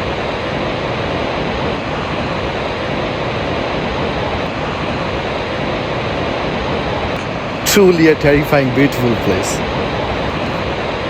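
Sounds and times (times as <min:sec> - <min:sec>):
waterfall rushing: 0:07.3 - 0:10.6.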